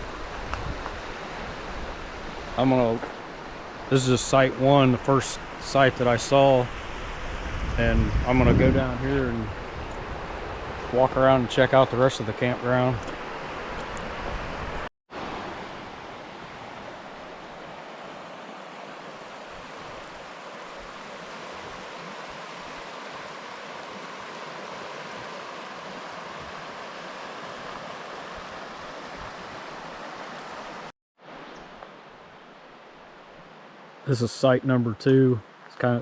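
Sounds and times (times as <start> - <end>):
river flowing over rocks: 13.1 - 34.0.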